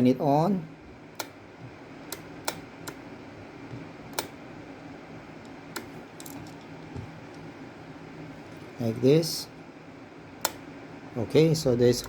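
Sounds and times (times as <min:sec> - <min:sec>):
kettle switch click: 0:10.4 - 0:10.6.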